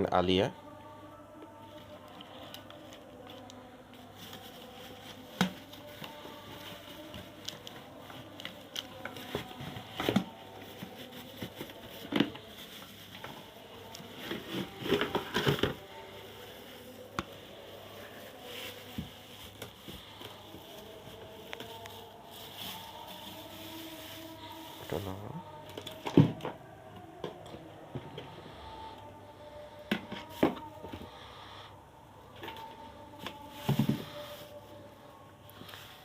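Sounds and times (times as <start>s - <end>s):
packaging crinkling: 2.5s - 24.9s.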